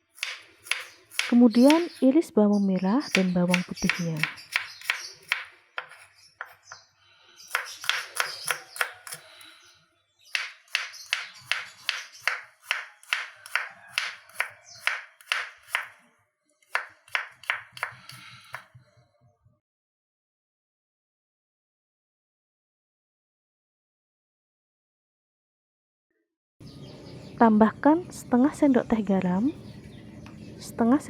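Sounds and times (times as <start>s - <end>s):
knife chopping on cutting board: 0.2s - 2.0s, 3.1s - 6.7s, 7.5s - 9.2s, 10.3s - 15.9s, 16.7s - 18.7s.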